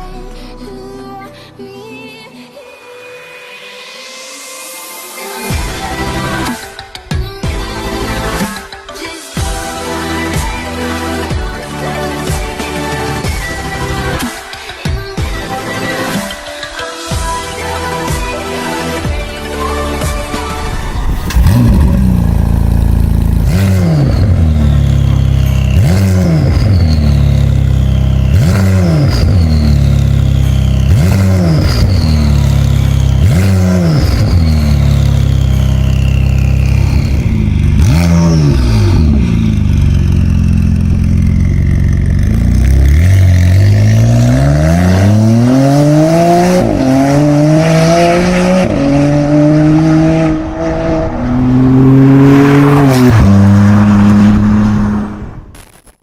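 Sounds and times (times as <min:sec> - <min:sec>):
car engine revving: 0:20.8 - 0:55.5
car accelerating with gear shifts: 0:21.2 - 0:55.4.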